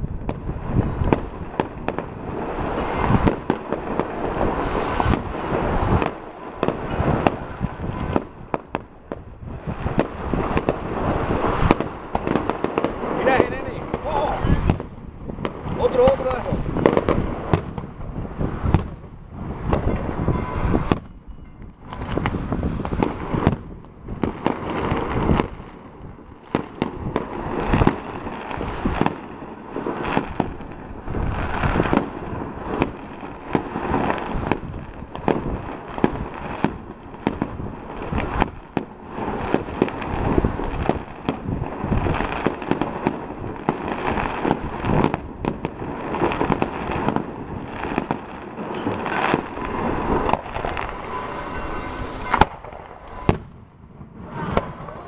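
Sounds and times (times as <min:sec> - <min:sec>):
fireworks bangs and crackles: 0:00.0 - 0:55.0.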